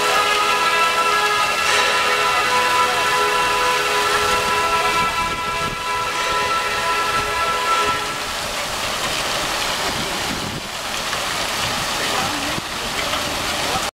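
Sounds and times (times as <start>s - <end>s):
held chord of steady tones: 0.0s - 8.4s
fountain water splashing: 0.0s - 13.9s.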